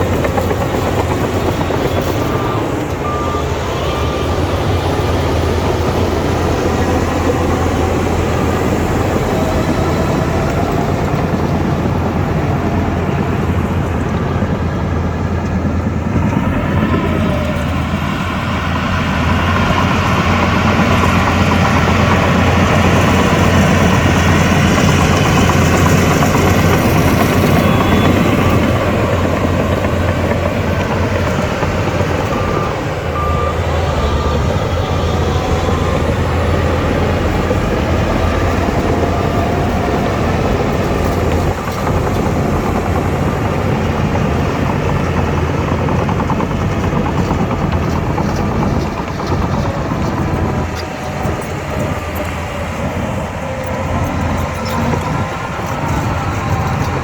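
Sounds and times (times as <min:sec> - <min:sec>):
bulldozer diesel engine droning: 0:00.0 - 0:57.0.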